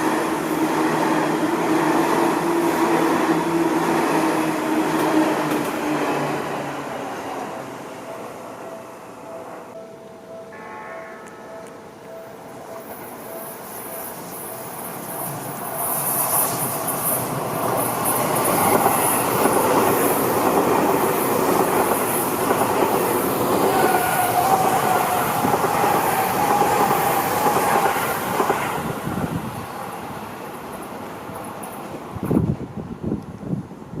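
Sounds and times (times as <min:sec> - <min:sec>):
electric train passing: 0:00.0 - 0:34.0
wind buffeting microphone: 0:17.3 - 0:34.0.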